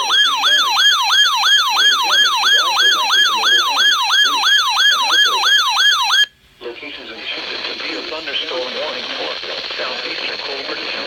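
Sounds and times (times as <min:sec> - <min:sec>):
electronic siren yelping: 0:00.0 - 0:06.3.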